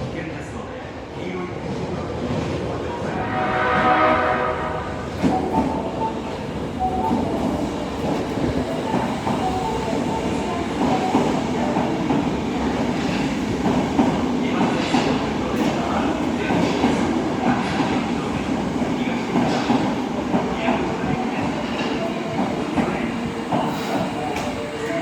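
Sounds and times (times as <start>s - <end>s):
train running noise: 2.3s - 25.0s
subway train horn: 3.0s - 11.3s.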